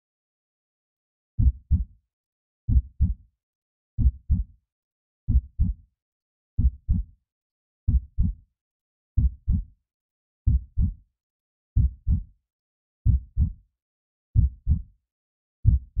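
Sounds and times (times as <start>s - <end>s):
heartbeat thumps: 5.3s - 5.7s, 9.2s - 9.6s, 10.5s - 10.9s, 11.8s - 12.2s, 13.1s - 13.5s, 14.4s - 14.8s, 15.6s - 16.0s.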